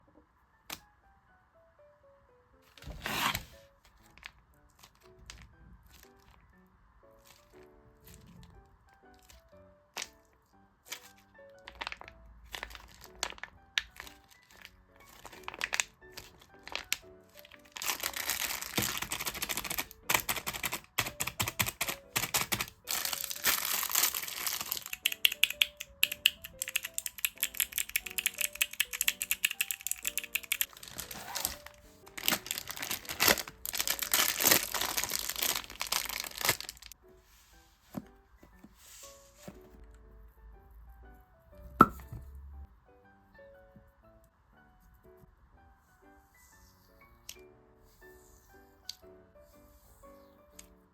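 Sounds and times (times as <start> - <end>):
soft background music: 0.0 - 50.9
packaging crinkling and tearing: 10.9 - 37.0.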